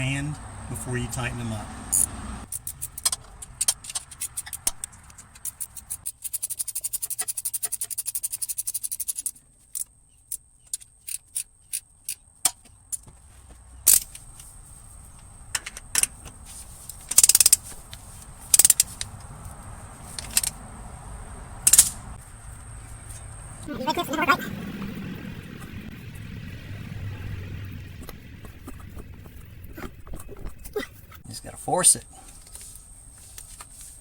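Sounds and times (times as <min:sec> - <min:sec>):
hand ratchet clicking: 0:01.9 - 0:09.8, 0:16.9 - 0:17.6, 0:18.5 - 0:19.1.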